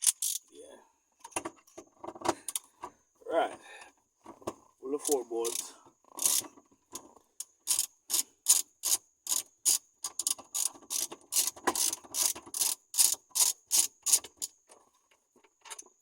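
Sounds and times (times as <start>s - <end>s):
socket ratchet clicking: 0.0s - 0.5s, 5.0s - 5.6s, 6.2s - 6.5s, 7.4s - 14.6s.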